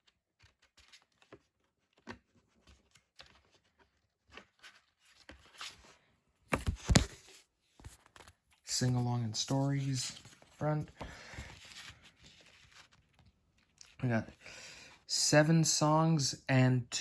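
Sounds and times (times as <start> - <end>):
paper rustling: 0.0 - 14.1.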